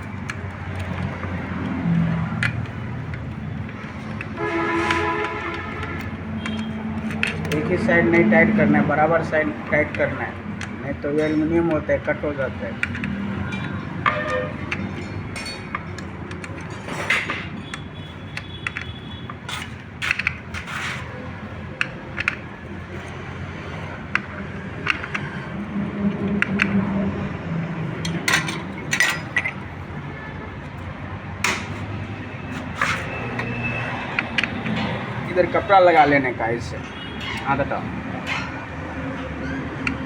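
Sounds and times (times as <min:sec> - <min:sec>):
hand tools clicking on bolts: 0:00.0 - 0:07.8, 0:09.8 - 0:21.1.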